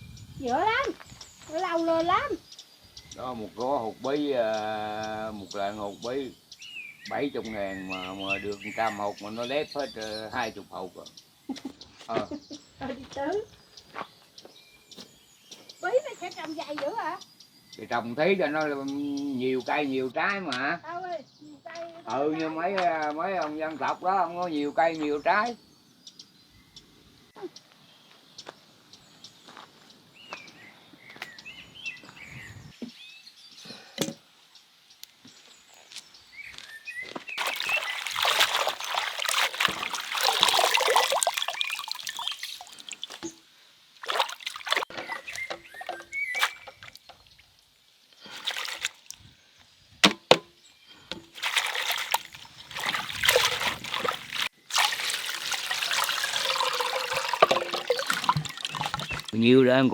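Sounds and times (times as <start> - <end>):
water pouring and splashing: 37.3 - 49.4, 51.1 - 59.6
sharp knocks: 50.0 - 51.4.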